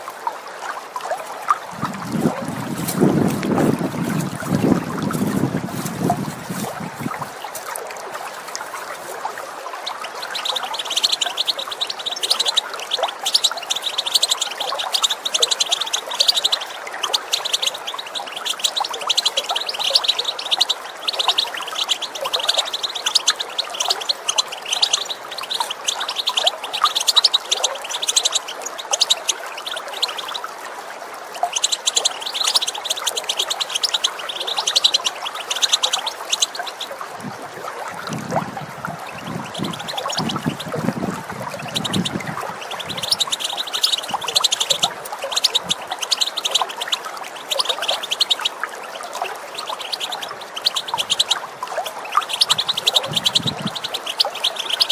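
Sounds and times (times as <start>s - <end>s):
running water: 0.0s - 54.9s
bird twittering calls: 8.6s - 30.6s, 31.3s - 37.0s, 38.0s - 54.9s.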